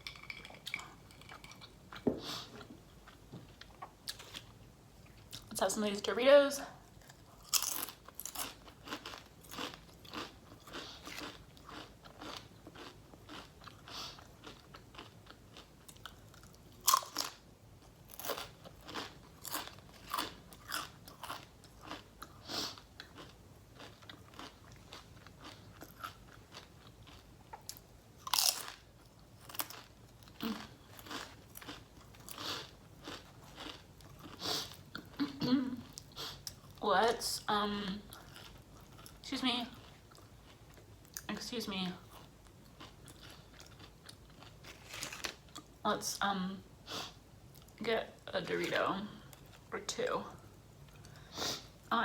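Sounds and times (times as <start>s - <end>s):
person crunching chips: 7.0s - 17.4s, 18.1s - 28.8s, 29.4s - 35.2s, 42.1s - 45.6s.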